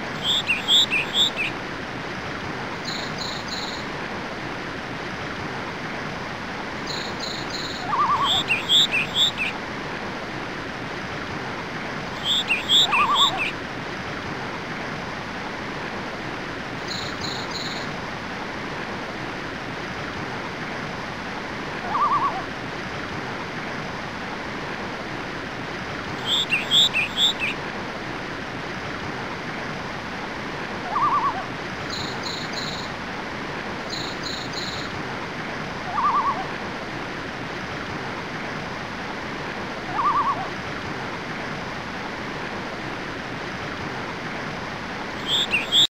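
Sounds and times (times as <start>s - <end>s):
bird chirping high: 0.2s - 1.5s, 6.9s - 9.5s, 12.2s - 13.6s, 26.2s - 27.6s, 35.9s - 36.4s, 45.2s - 45.9s.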